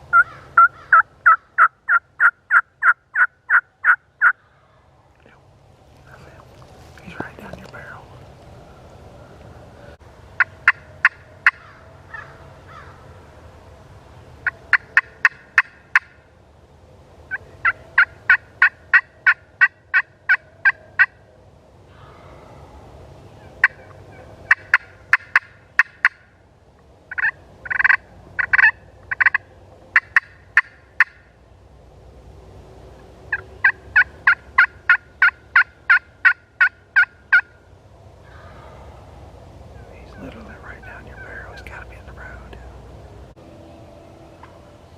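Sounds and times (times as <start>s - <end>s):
turkey yelping: 0.1s - 4.4s, 8.6s - 13.0s, 17.4s - 21.2s, 23.4s - 26.2s, 27.1s - 31.2s, 33.3s - 37.6s, 39.8s - 42.4s.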